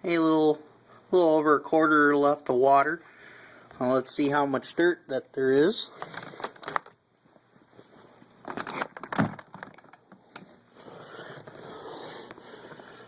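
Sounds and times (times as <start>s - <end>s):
plastic clicks: 6.0s - 7.0s, 8.5s - 10.5s.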